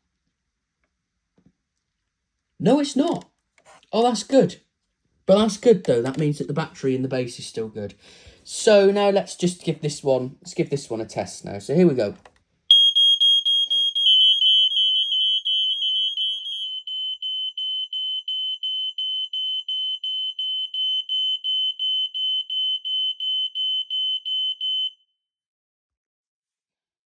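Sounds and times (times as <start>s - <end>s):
smoke alarm beeping rapidly: 12.7s - 25.0s
steady smoke alarm tone: 12.7s - 25.1s.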